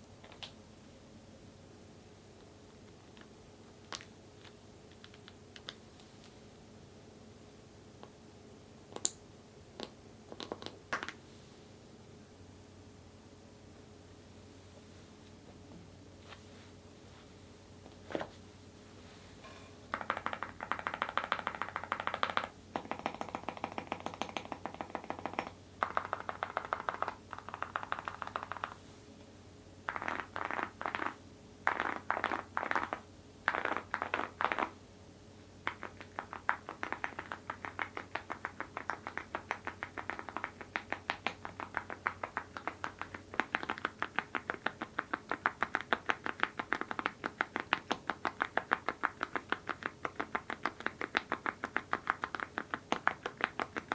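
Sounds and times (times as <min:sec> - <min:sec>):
mechanical keyboard typing: 0:20.0 - 0:28.7.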